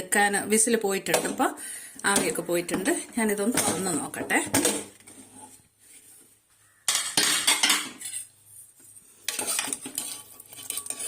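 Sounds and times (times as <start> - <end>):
spoon clinking and scraping pot: 6.9 - 8.4, 9.2 - 11.0.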